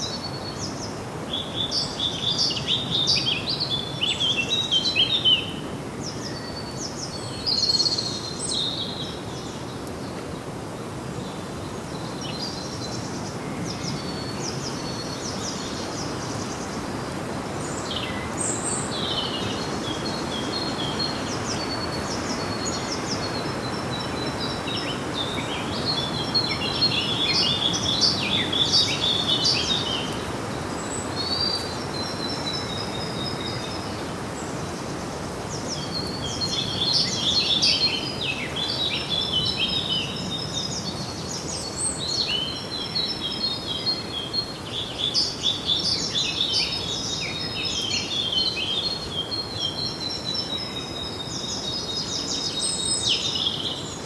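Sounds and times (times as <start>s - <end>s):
steady background hiss: 0.0s - 54.0s
birds chirping and trilling: 17.6s - 34.8s.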